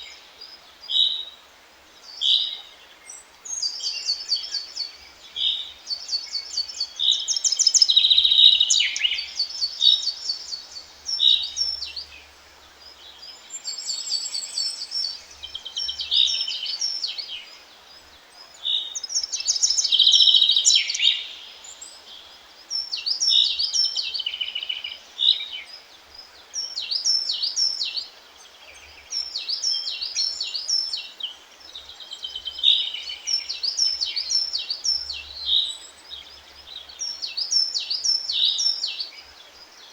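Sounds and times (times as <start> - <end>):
faint steady hiss: 0.0 - 39.9
songbirds chirping and trilling: 0.0 - 39.9.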